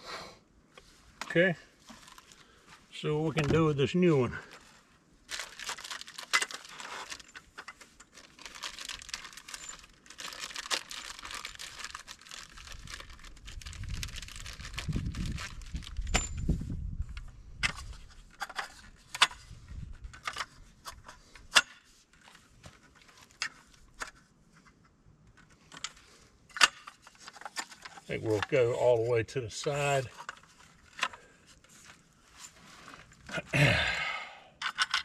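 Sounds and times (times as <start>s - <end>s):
plastic crinkling and rustling: 1.8s - 3.7s, 4.4s - 16.6s, 21.9s - 24.2s, 29.6s - 33.4s.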